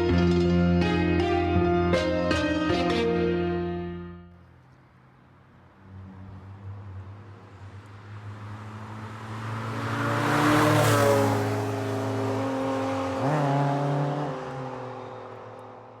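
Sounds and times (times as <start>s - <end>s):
car engine accelerating: 7.9s - 16.0s.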